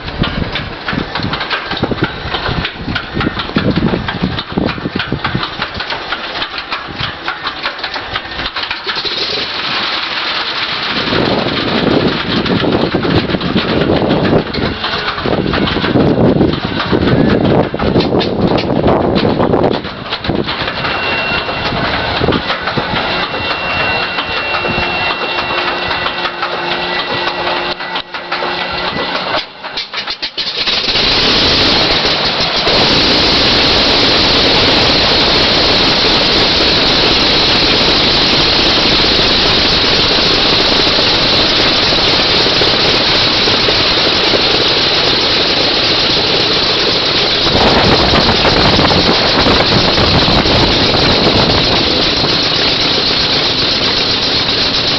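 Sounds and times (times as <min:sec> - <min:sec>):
engine running: 0:00.0 - 0:54.9.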